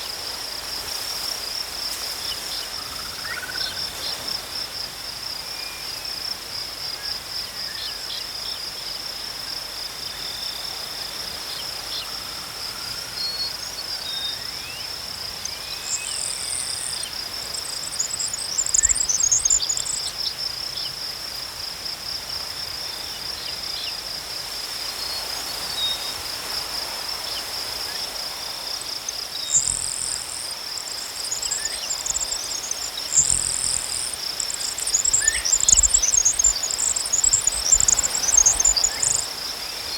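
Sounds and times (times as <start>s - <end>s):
crickets trilling: 0.0s - 39.9s
fainter lower cricket trill: 28.9s - 39.9s.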